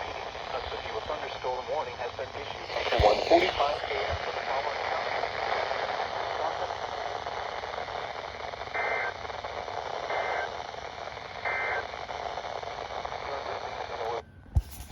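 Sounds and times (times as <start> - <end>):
short data bursts: 0.0 - 5.8
radio static hiss: 0.0 - 14.9.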